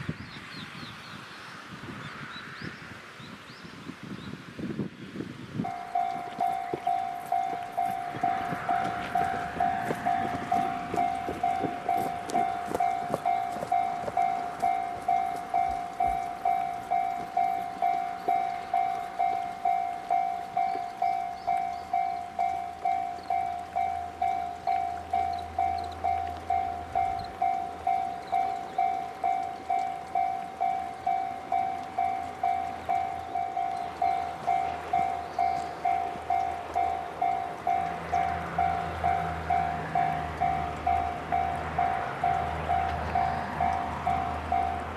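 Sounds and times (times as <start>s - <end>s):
level-crossing alarm clanging: 5.7s - 44.9s.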